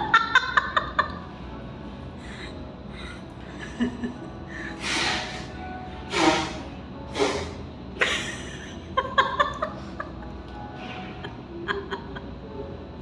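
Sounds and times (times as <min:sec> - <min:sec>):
background music: 0:00.0 - 0:13.0
person breathing out sharply: 0:04.6 - 0:07.6.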